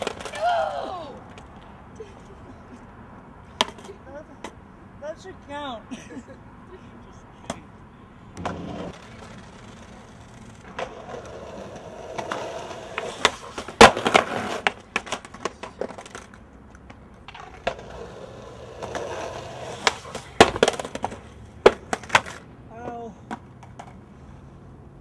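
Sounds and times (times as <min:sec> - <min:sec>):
skateboard clacking on ground: 0:00.0 - 0:01.7, 0:03.5 - 0:04.6, 0:08.4 - 0:24.1
skateboard wheels rolling: 0:00.0 - 0:04.6, 0:08.3 - 0:25.0.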